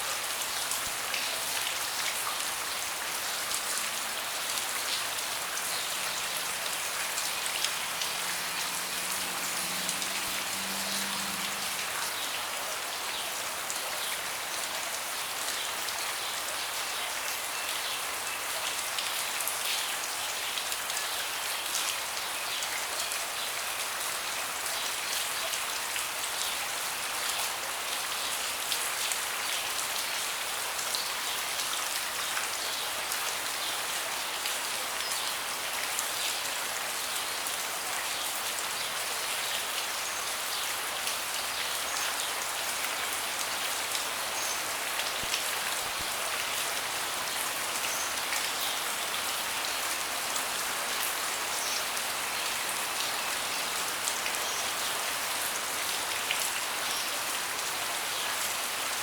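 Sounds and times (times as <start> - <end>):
rain falling on a deck: 0.0 - 59.0.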